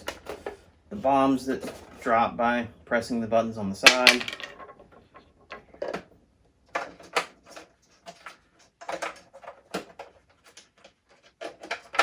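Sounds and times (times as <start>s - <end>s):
plastic toy clicks and knocks: 3.8s - 4.9s.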